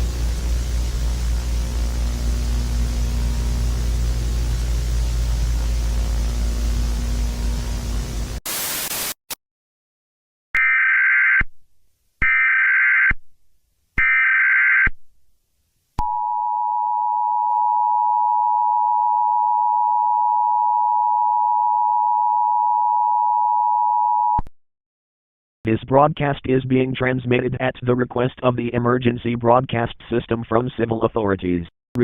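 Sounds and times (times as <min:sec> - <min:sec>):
burst of white noise: 0:00.0 - 0:09.3
static hiss: 0:00.0 - 0:09.3.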